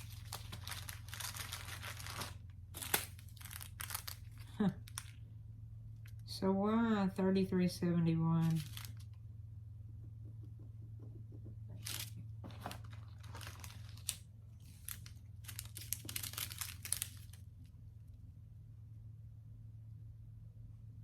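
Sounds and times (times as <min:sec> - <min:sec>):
plastic bags crinkling: 0:00.0 - 0:05.2, 0:08.4 - 0:09.2, 0:11.8 - 0:17.5
steady low hum: 0:00.0 - 0:21.0.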